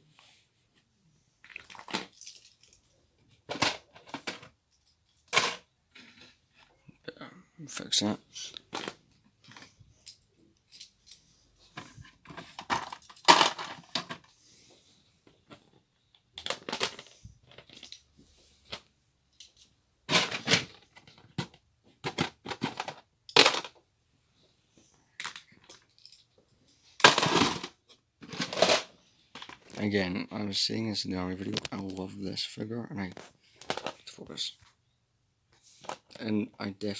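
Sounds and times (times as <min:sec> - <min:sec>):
plastic pieces clicking and rattling: 0:01.4 - 0:02.9, 0:12.3 - 0:14.3, 0:16.3 - 0:18.0, 0:19.4 - 0:23.8, 0:27.0 - 0:29.8.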